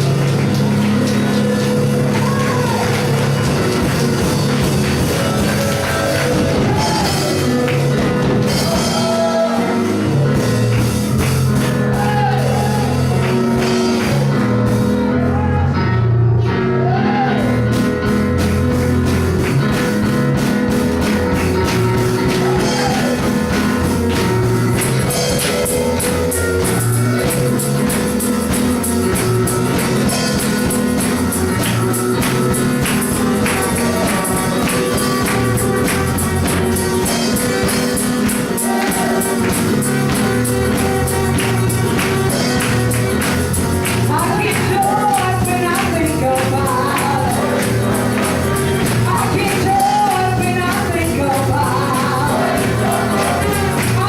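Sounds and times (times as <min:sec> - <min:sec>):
gospel band playing: 0:00.0 - 0:54.0
person singing: 0:44.1 - 0:54.0.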